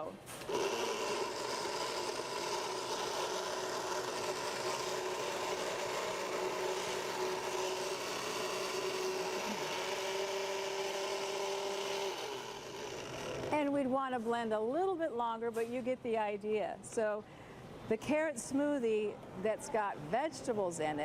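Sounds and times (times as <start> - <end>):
blender motor whining: 0.4 - 13.6.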